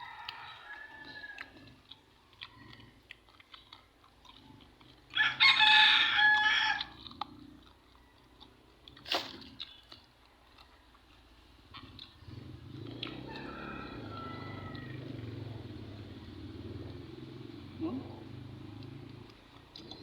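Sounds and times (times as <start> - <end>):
rooster crowing: 0.0 - 1.7, 5.1 - 7.0, 13.2 - 15.5.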